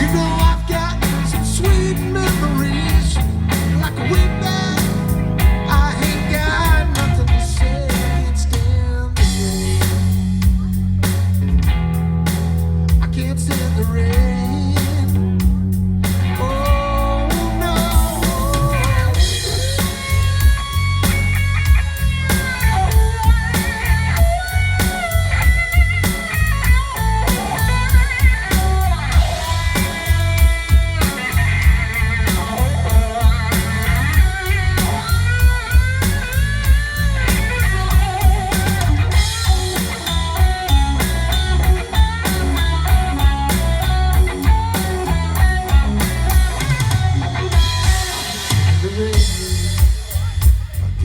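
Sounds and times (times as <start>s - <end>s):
drum beat: 0.0s - 8.2s, 9.2s - 11.9s, 14.9s - 51.0s
bass: 0.0s - 51.0s
lead guitar solo: 16.2s - 50.4s.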